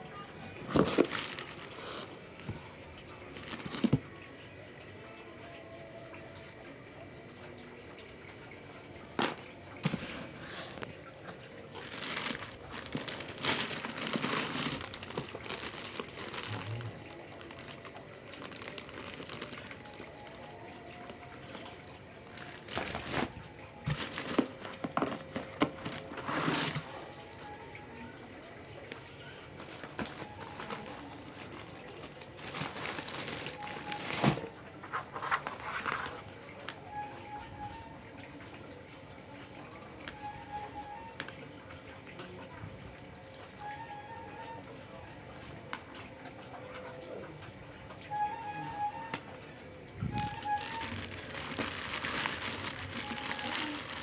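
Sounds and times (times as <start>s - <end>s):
packaging crinkling: 0.4s - 4.0s, 9.8s - 27.3s, 29.5s - 36.2s, 50.0s - 54.0s.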